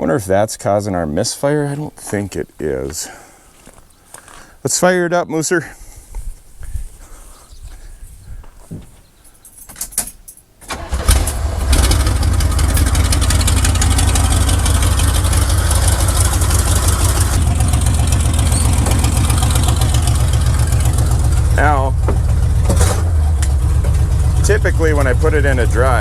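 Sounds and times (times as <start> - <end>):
pickup engine cranking and starting: 10.6 - 26.0.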